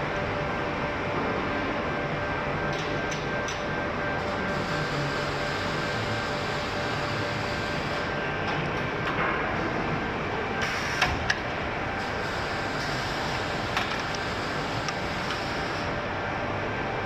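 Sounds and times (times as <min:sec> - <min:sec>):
machine hum: 0:00.0 - 0:17.0.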